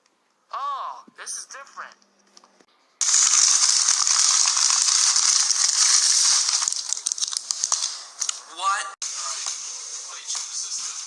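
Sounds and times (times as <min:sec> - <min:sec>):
loud hissing crackling noise: 0:03.0 - 0:08.4.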